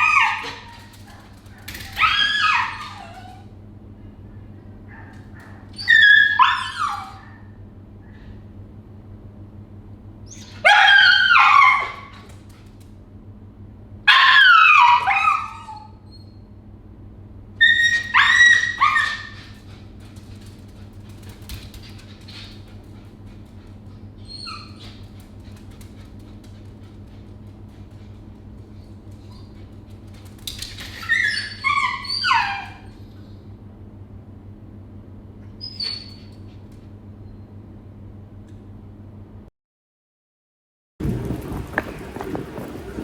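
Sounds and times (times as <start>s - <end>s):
dog whining: 0.0s - 3.5s, 4.9s - 7.6s, 10.3s - 12.3s, 14.1s - 16.4s, 17.6s - 19.8s, 23.8s - 26.1s, 30.6s - 33.4s, 35.4s - 36.6s
low electrical hum: 0.0s - 39.5s.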